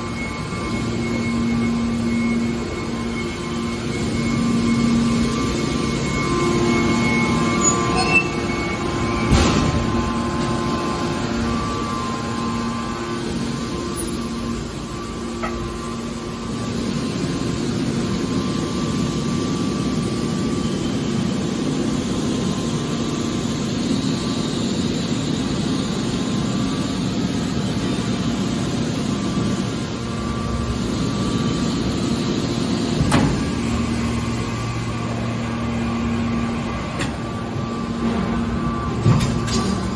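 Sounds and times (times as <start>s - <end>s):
baler machine hum: 0.0s - 39.9s.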